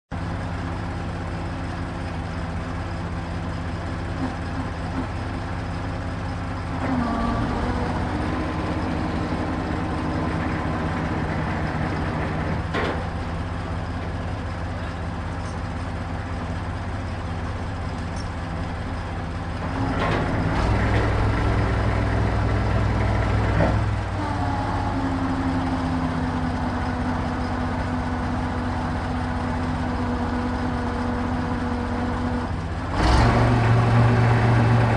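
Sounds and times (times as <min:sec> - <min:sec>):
crane engine running: 0:00.1 - 0:34.9.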